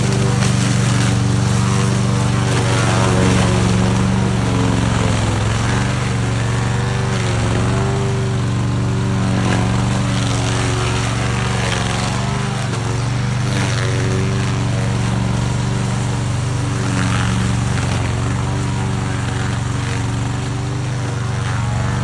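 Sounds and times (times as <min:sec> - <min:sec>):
lawn mower engine running: 0:00.0 - 0:22.0.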